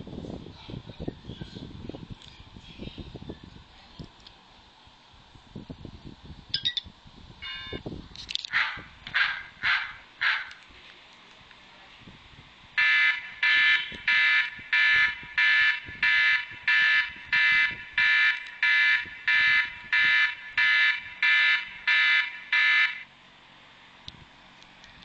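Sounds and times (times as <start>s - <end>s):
electronic alarm beeps: 6.6s - 7.8s.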